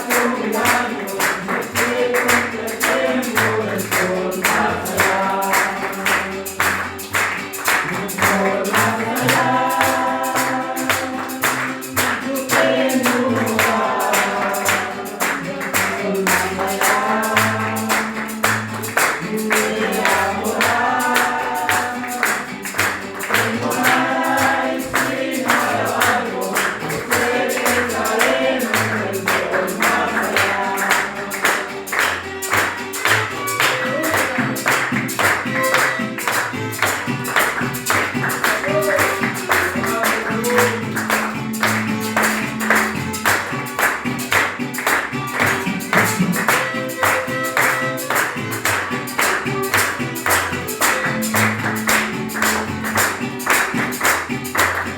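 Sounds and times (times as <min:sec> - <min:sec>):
people singing worship music: 0:00.0 - 0:06.8, 0:07.8 - 0:32.5
steady percussion beat: 0:00.0 - 0:54.9
violins playing: 0:13.0 - 0:54.9.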